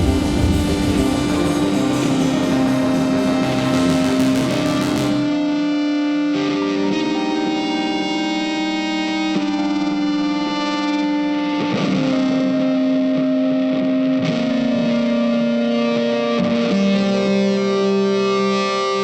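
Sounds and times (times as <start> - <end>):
guitar sustained chords: 0.0 - 19.0.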